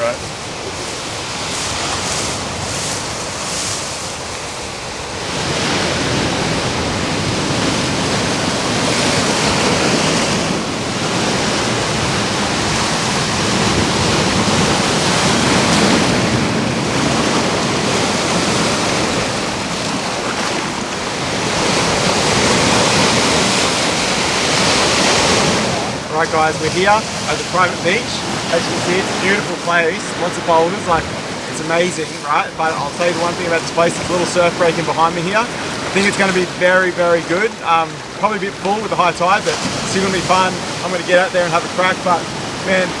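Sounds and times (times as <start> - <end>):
ocean waves breaking on beach: 0.0 - 43.0.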